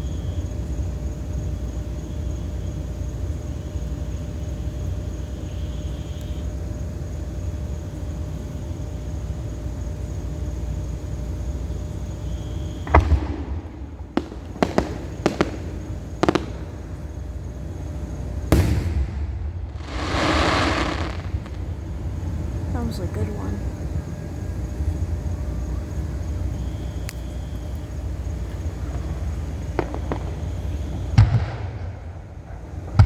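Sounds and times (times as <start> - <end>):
distant fireworks: 0.0 - 33.0
fireworks booms: 12.6 - 23.4, 28.6 - 33.0
sharp cracks: 12.9 - 22.0
low rumble: 13.6 - 25.4.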